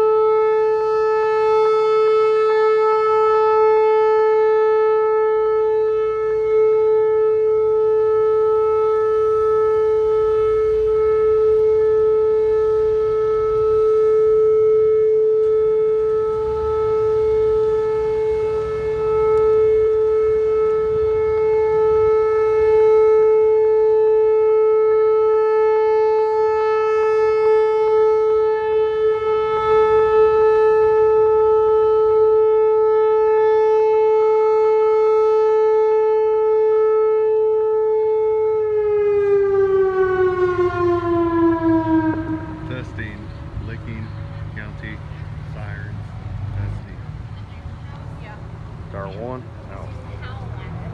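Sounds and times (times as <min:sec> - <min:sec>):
warning siren steady tone: 0:00.0 - 0:50.9.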